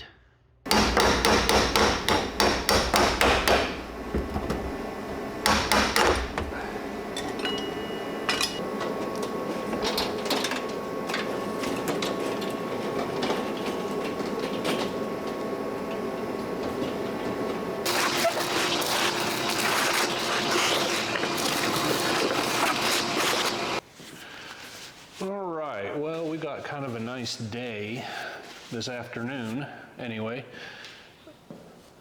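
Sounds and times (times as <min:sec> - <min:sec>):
hammer striking metal: 0:00.7 - 0:04.0, 0:05.4 - 0:06.6.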